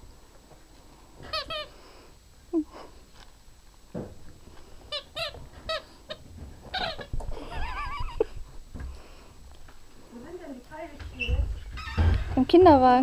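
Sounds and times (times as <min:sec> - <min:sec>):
squeaky toy squeaking: 0:04.9 - 0:07.1.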